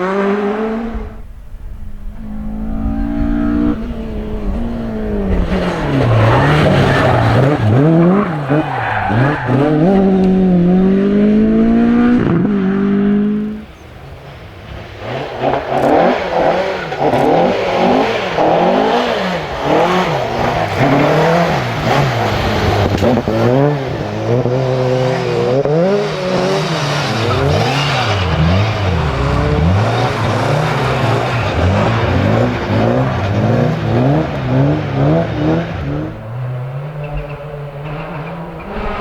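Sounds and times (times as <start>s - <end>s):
rally car engine revving: 0.0s - 39.0s.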